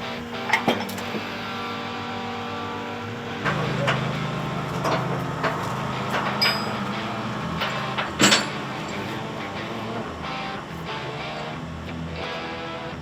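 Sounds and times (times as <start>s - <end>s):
heavy diesel machinery running: 0.0s - 13.0s
sharp metallic clanks: 0.4s - 1.6s, 3.4s - 12.0s.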